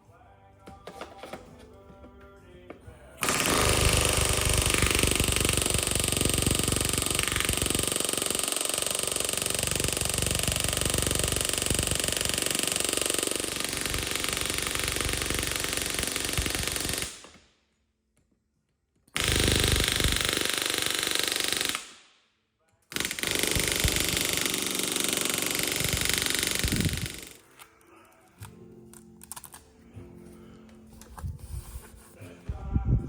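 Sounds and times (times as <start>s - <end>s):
pneumatic air tool whining: 3.2s - 17.4s, 19.2s - 21.9s, 23.0s - 27.5s.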